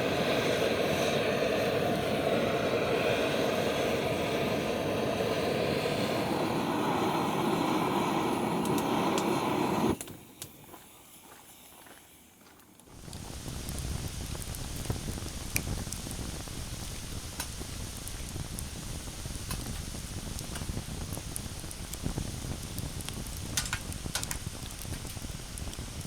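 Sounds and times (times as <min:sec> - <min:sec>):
sharp crackles and pops: 0:05.6 - 0:11.3, 0:12.8 - 0:26.0.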